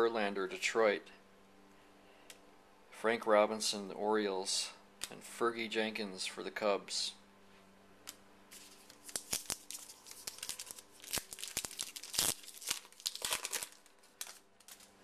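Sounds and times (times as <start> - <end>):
foil wrapper crinkling and tearing: 8.6 - 15.0.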